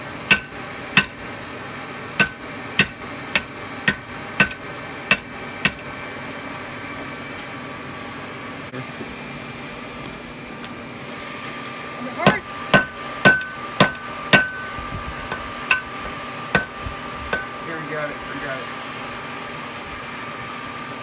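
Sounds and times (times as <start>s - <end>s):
steady hum: 0.0s - 21.0s
hammer striking steel on anvil: 0.2s - 1.2s, 2.2s - 5.9s, 12.2s - 15.9s, 16.5s - 17.6s.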